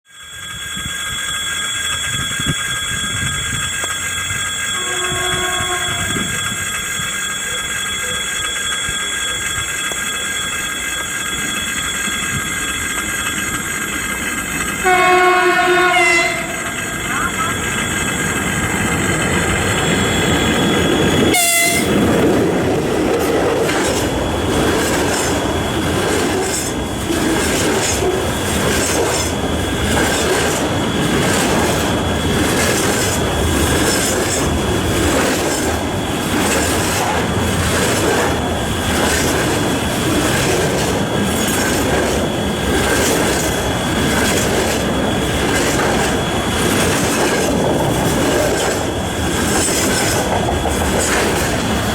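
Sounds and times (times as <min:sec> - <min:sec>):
thin wheel squeal: 0:00.2 - 0:15.0
train wheels clattering on rail joints: 0:01.1 - 0:51.9
locomotive horn chord: 0:04.8 - 0:06.1, 0:14.8 - 0:17.3, 0:21.3 - 0:22.0.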